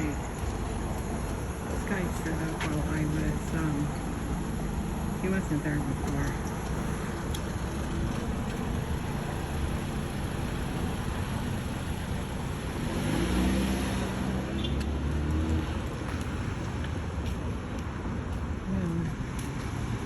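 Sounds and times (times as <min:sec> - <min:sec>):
street traffic noise: 0:00.0 - 0:20.0
vehicle engine passing close: 0:01.8 - 0:16.3.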